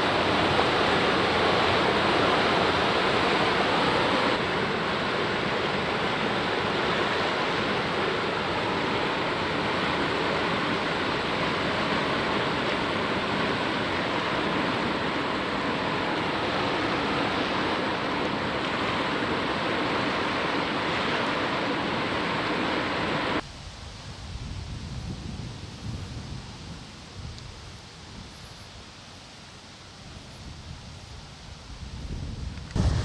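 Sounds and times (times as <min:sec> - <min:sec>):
floodwater rushing: 0:00.0 - 0:23.4, 0:32.8 - 0:33.0.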